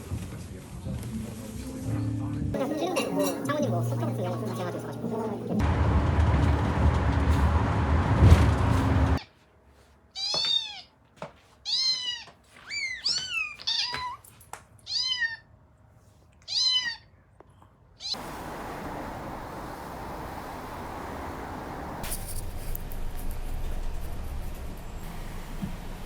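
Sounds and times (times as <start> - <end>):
cat meowing: 10.2 - 10.9, 11.6 - 14.2, 14.8 - 15.5, 16.4 - 17.2.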